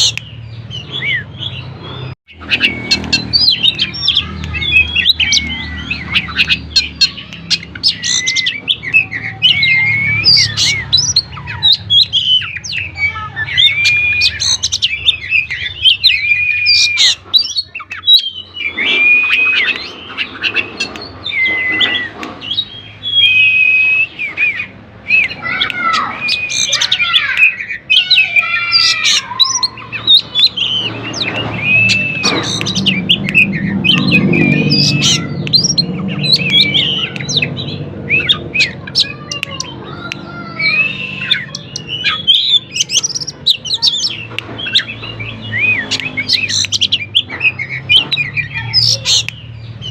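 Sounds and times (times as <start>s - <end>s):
bird singing varied whistles: 7.2s - 11.2s, 13.5s - 20.0s, 21.3s - 28.1s, 29.4s - 37.5s, 40.6s - 43.3s.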